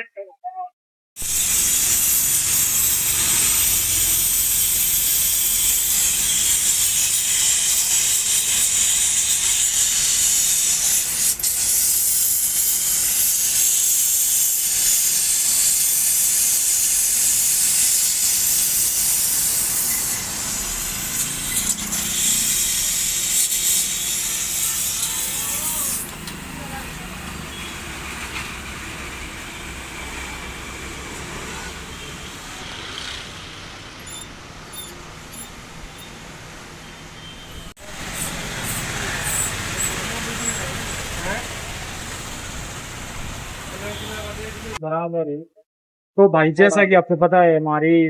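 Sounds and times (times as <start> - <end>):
loud high hiss: 1.2 - 6.3.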